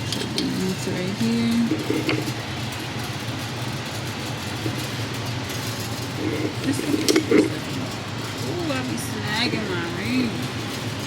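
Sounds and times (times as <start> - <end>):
faint voices: 0.1 - 2.4, 6.2 - 10.6.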